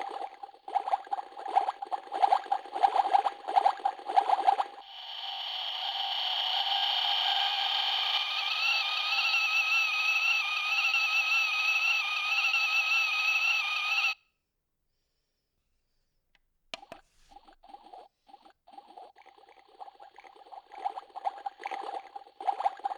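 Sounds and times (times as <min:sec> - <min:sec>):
toy kettle high warbling tone: 0:04.3 - 0:14.2, 0:17.6 - 0:22.9.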